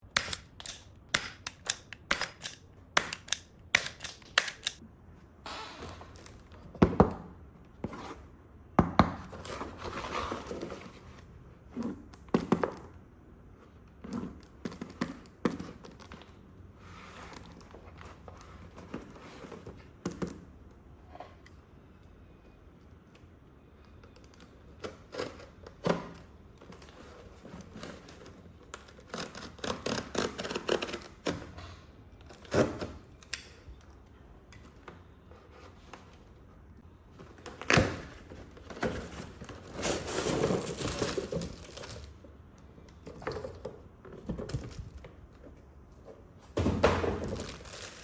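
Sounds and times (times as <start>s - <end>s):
packaging rustling and tearing: 37.2s - 42.2s, 47.2s - 48.0s.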